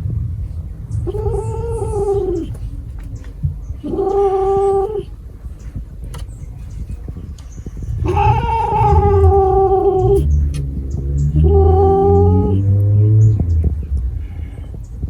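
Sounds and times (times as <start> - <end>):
cat yowling: 1.0 - 2.7, 3.8 - 5.1, 7.9 - 10.4, 11.4 - 12.6.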